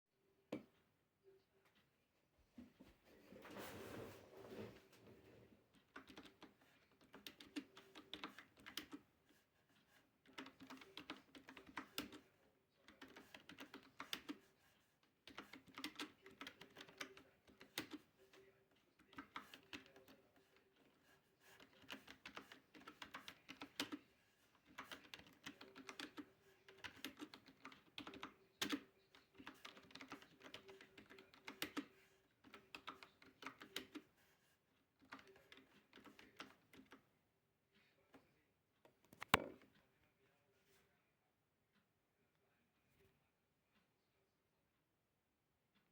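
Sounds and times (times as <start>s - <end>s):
quiet keyboard typing: 5.7s - 37.1s.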